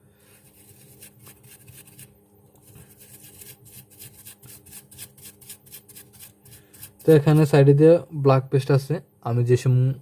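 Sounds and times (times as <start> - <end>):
metal tool scraping circuit board: 3.0 - 7.6.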